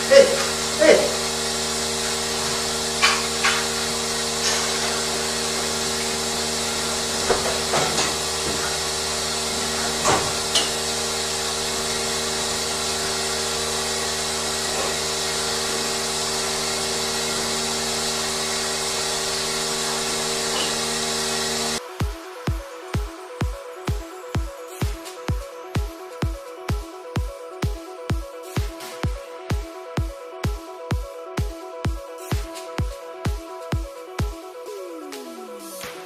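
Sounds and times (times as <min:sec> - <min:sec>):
barn machinery hum and hiss: 0:00.0 - 0:22.1
sharp knocks and clanks: 0:02.3 - 0:06.2, 0:06.8 - 0:11.0.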